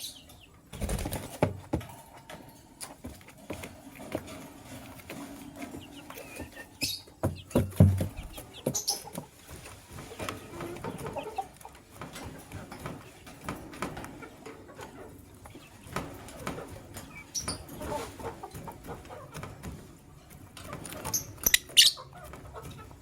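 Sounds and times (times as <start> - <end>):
lovebirds chattering: 0.0 - 1.2, 4.5 - 11.7, 14.2 - 19.4, 20.7 - 23.0.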